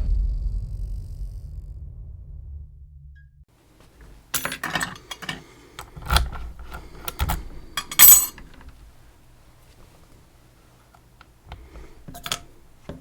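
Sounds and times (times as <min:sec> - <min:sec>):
metal parts clinking: 0:04.0 - 0:08.9, 0:11.6 - 0:12.6.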